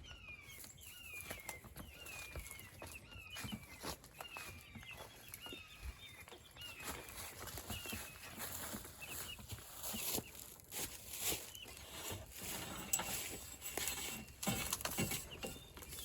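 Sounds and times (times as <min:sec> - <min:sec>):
chicks peeping: 0:00.0 - 0:16.0
knocks and rustles: 0:12.0 - 0:16.0.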